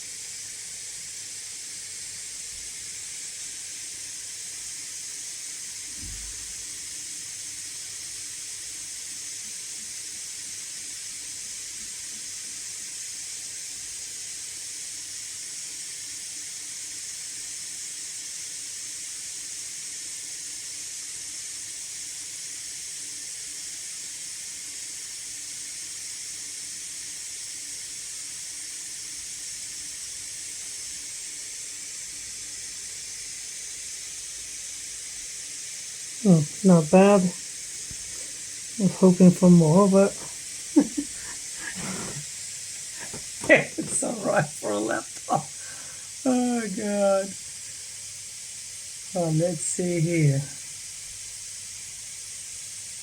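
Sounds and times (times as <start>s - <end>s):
brief low thump: 6.0s - 6.5s.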